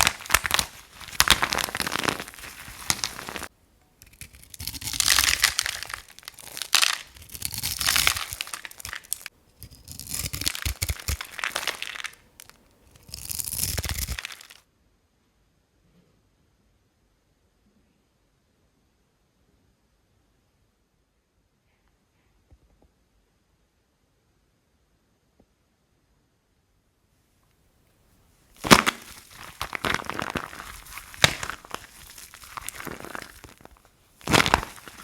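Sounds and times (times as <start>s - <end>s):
dry soap crunching: 0.0s - 14.6s, 28.6s - 35.0s.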